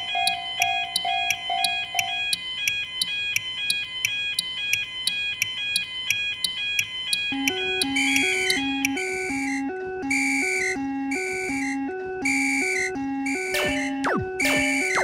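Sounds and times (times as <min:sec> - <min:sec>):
railroad crossing warning bells: 0:00.0 - 0:02.6, 0:13.6 - 0:15.0
two-note crossing alarm: 0:00.0 - 0:15.0.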